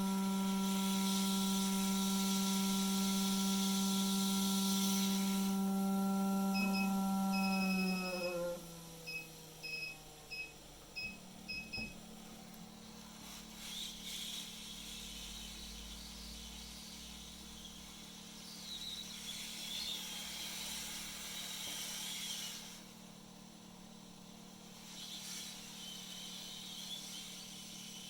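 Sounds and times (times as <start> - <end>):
low hum with airy hiss: 0.0 - 28.0
short electronic beeps: 6.6 - 8.3.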